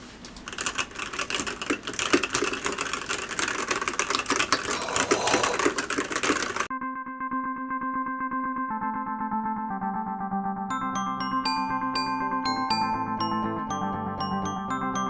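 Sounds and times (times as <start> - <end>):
fast mechanical keyboard typing: 0.2 - 6.7.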